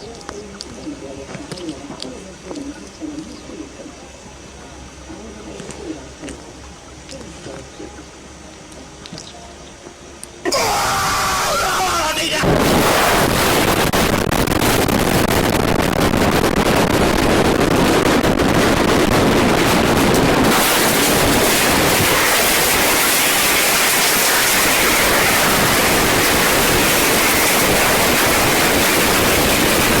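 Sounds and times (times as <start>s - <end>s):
loud static rushing noise: 10.4s - 30.0s.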